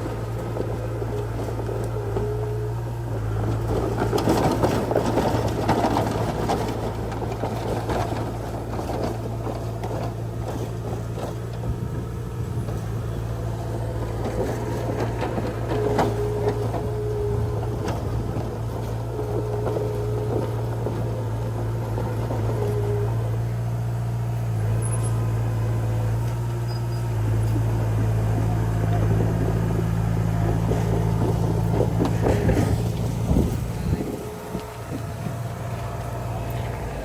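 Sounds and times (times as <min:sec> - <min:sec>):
bulldozer diesel engine running: 0:00.0 - 0:37.0
short squeals: 0:26.6 - 0:27.4.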